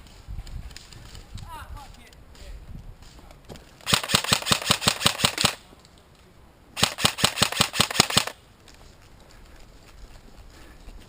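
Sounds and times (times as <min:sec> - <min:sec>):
airsoft gun firing full-auto: 0:03.8 - 0:05.6, 0:06.8 - 0:08.4.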